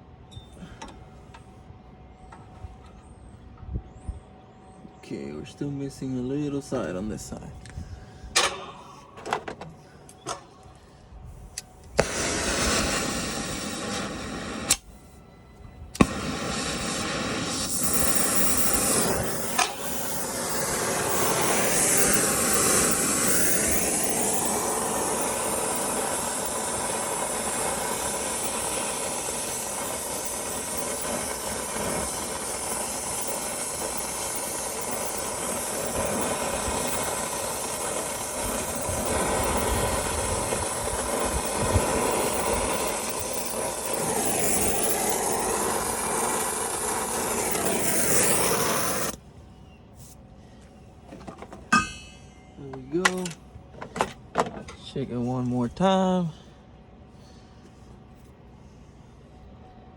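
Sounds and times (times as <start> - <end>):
torch flame hissing: 11.3 - 15.2, 15.8 - 49.2
torch igniter clicks: 11.5 - 15.0, 15.9 - 49.2, 52.8 - 53.4.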